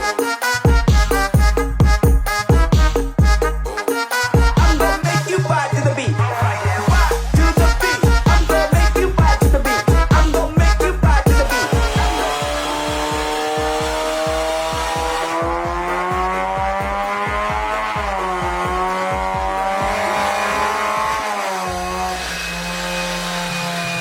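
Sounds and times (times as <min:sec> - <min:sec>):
car engine accelerating: 0:11.2 - 0:24.0.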